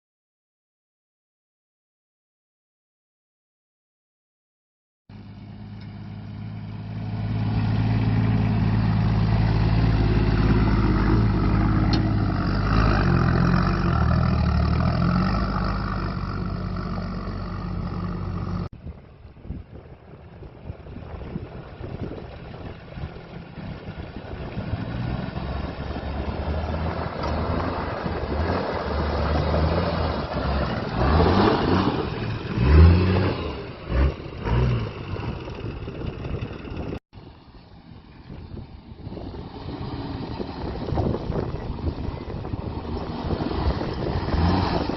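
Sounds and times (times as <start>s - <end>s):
diesel engine running: 5.1s - 18.7s, 20.2s - 44.9s
engine revving: 5.8s - 18.7s, 23.5s - 37.0s, 39.1s - 44.9s.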